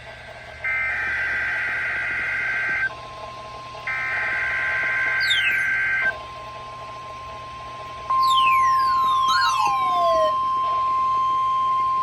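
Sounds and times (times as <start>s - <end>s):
weather radio alarm tone: 3.9s - 6.2s, 8.1s - 12.0s
digital data burst: 5.2s - 6.0s, 8.1s - 10.2s.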